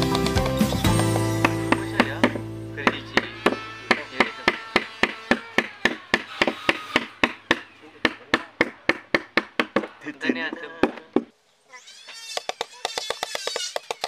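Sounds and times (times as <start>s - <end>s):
mallet tapping chisel into wood: 1.1s - 9.9s.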